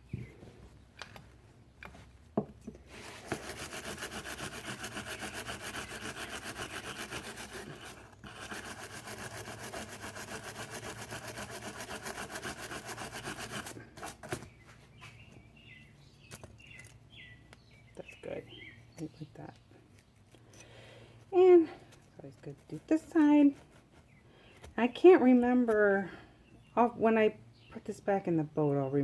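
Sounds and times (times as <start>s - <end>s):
scrubbing metal with abrasive: 2.9s - 14.2s.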